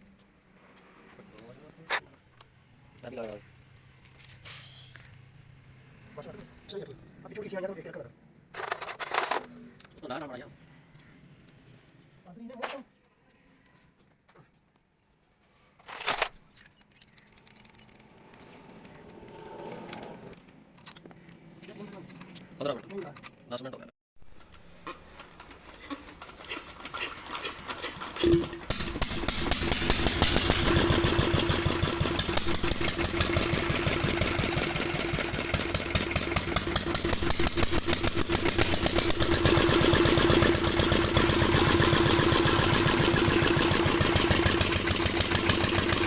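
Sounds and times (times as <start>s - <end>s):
diesel engine starting and running: 26.0s - 46.0s.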